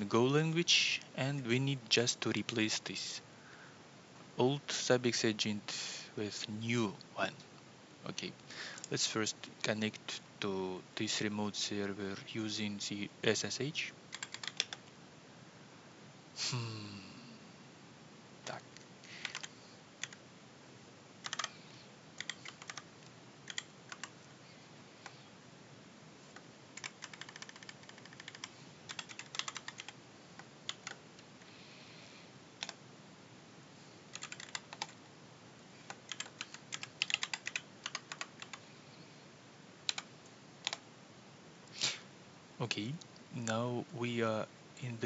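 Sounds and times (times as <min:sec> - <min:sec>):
keyboard typing: 0:14.1 - 0:14.9, 0:19.2 - 0:20.2, 0:21.2 - 0:21.6, 0:22.2 - 0:24.2, 0:26.8 - 0:31.0, 0:34.1 - 0:35.0, 0:35.9 - 0:38.6, 0:39.9 - 0:40.8.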